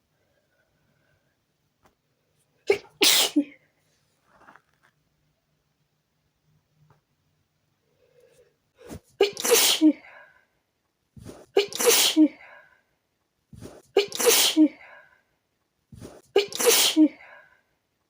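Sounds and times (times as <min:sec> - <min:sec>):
woman sneezing: 0:02.7 - 0:03.5, 0:08.9 - 0:10.0, 0:11.6 - 0:12.4, 0:14.0 - 0:14.8, 0:16.4 - 0:17.2.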